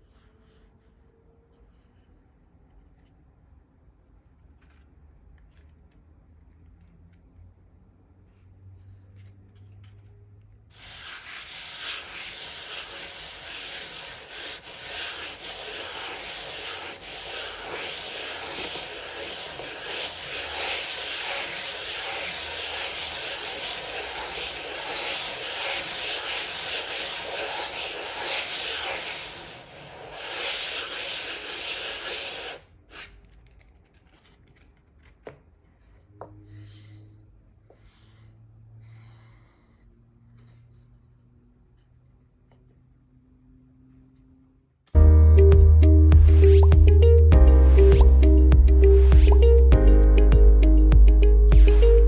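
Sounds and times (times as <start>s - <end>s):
sandpaper rubbing on wood: 10.8s - 33.3s.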